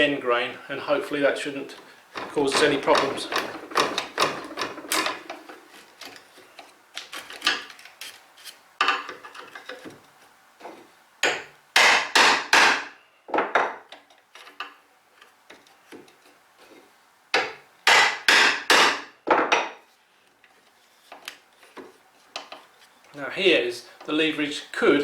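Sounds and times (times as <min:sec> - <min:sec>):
hammer striking chisel into wood: 0:11.2 - 0:12.9, 0:17.4 - 0:19.7.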